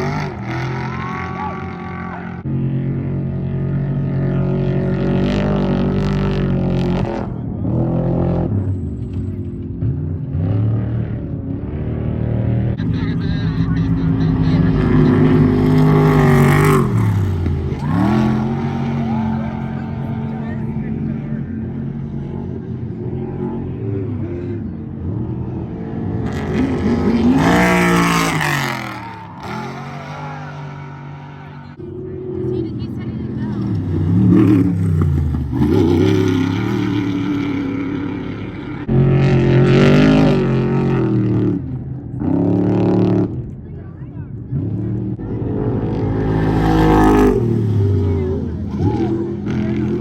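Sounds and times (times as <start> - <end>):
race vehicle engines revving: 0.0 - 50.0
race vehicle engine revving past: 44.6 - 50.0.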